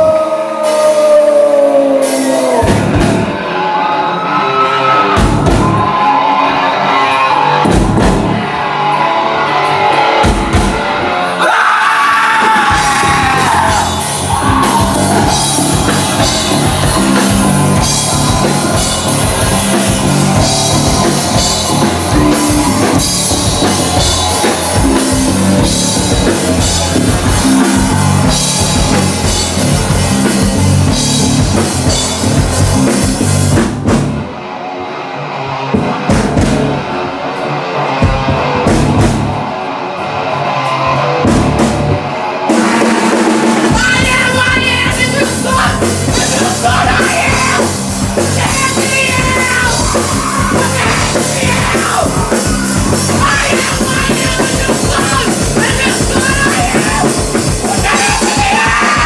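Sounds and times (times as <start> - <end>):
person singing: 0.0 - 7.6, 43.6 - 59.0
live rock band playing: 0.0 - 59.0.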